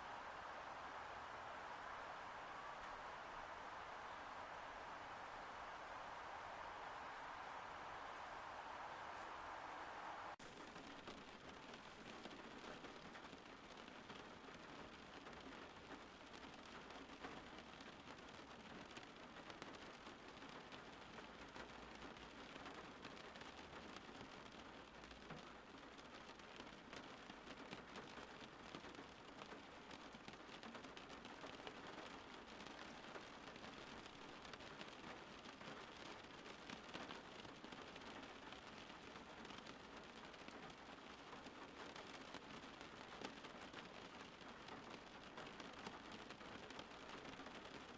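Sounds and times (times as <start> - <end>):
soft rain pattering: 0.0 - 47.9.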